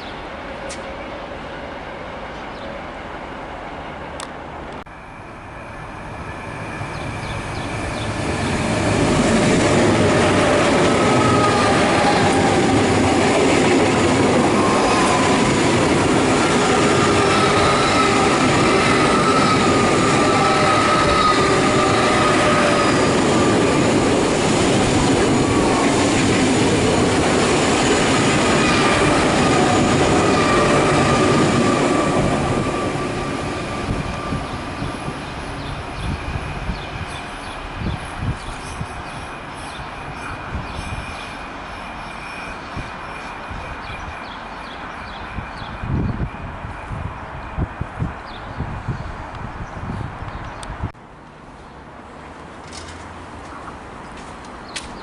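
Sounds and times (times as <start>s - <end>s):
train wheels squealing: 4.9s - 24.0s, 24.6s - 26.8s, 27.7s - 48.5s.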